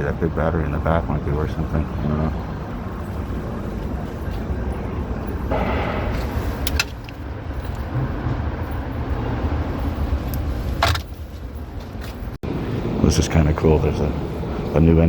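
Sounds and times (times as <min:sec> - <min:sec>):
rumble of passing vehicles: 0:00.0 - 0:15.0.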